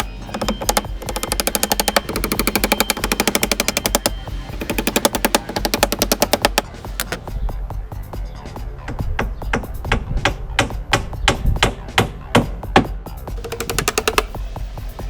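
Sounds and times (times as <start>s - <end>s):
power tool hammering: 0.0s - 7.3s.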